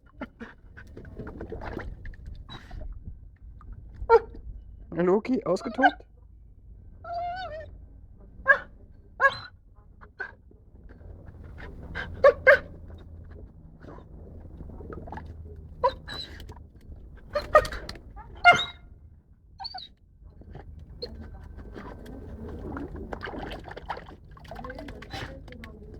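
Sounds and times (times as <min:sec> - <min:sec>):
dog yipping: 0:08.5 - 0:09.5, 0:11.6 - 0:12.8, 0:15.8 - 0:16.5, 0:17.3 - 0:18.9, 0:19.6 - 0:19.9
water bubbling and gurgling: 0:20.7 - 0:25.9.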